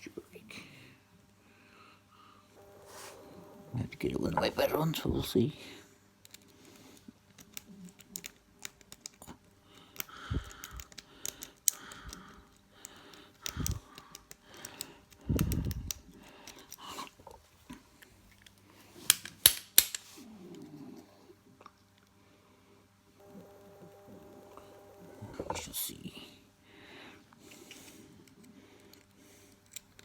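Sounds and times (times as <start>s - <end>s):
lock pick scraping and clicking: 6.2s - 17.2s, 18.0s - 20.1s, 27.5s - 30.0s.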